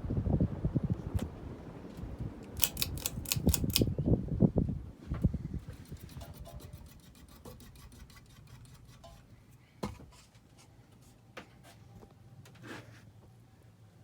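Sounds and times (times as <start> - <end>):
ceiling fan ticking: 2.0 - 3.9.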